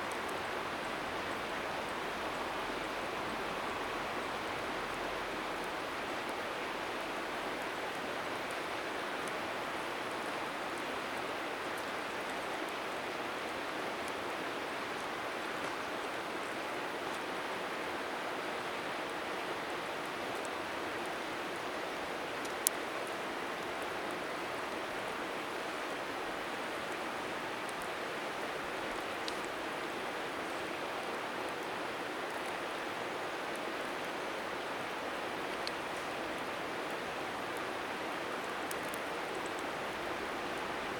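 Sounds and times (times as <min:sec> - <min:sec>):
river water rushing: 0:00.0 - 0:40.9
bonfire crackling: 0:19.9 - 0:40.9.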